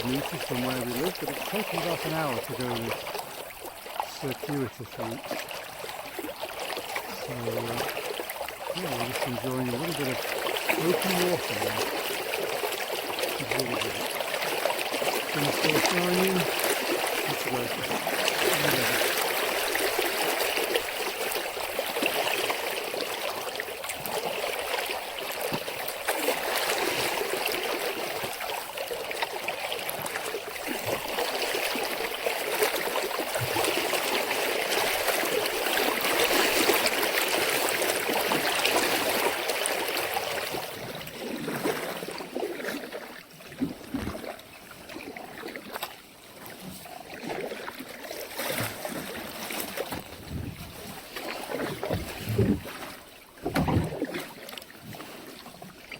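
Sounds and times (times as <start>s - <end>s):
brook water running: 0.0s - 55.9s
short splashes or knocks: 6.6s - 20.8s, 43.5s - 44.4s, 48.1s - 55.1s.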